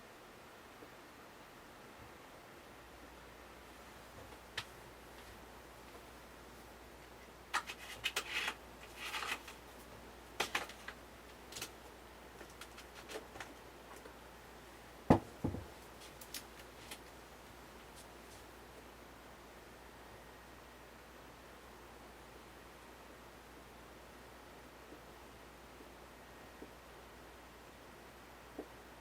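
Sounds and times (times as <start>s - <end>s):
dull knock: 15.1s - 15.7s.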